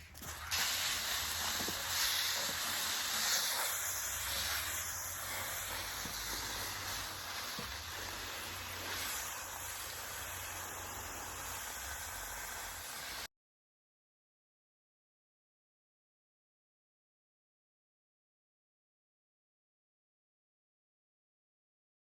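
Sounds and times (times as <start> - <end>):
garden hose spraying water on leaves: 0.0 - 13.3.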